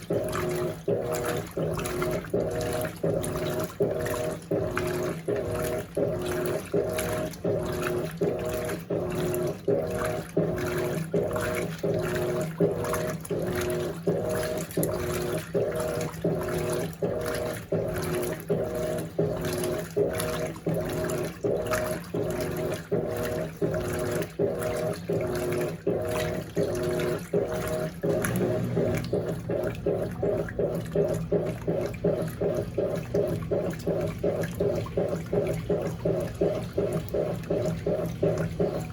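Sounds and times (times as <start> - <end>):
washing machine agitating: 0.0 - 38.9
water sloshing: 0.0 - 38.9.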